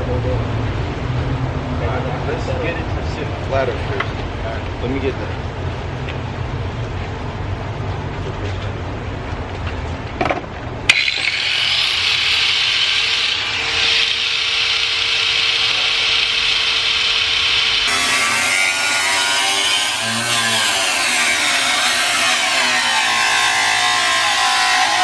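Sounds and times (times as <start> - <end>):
power saw cutting metal: 10.9 - 25.0.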